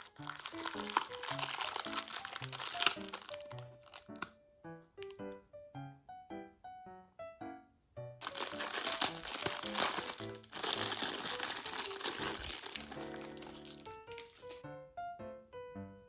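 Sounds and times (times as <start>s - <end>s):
plastic wrapping crinkling: 0.0s - 4.3s, 8.2s - 14.6s.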